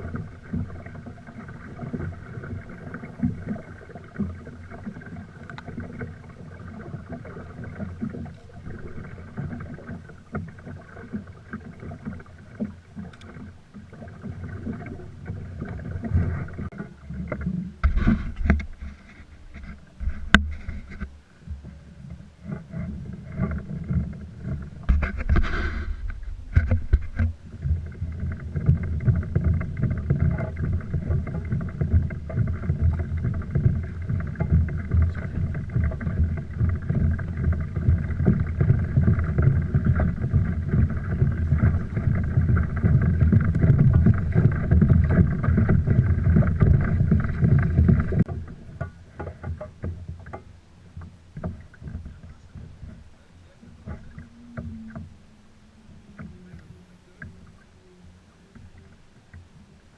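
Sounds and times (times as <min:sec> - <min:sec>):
boat engine rumble: 0:00.0 - 0:59.9
faint hum: 0:00.0 - 0:59.9.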